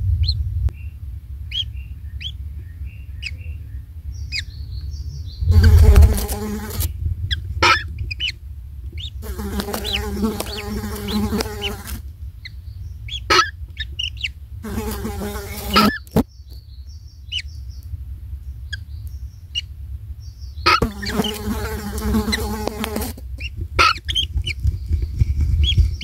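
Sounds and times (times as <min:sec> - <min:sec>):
flying insect buzzing: 0:05.5 - 0:06.9, 0:09.2 - 0:12.0, 0:14.6 - 0:16.2, 0:20.8 - 0:23.3.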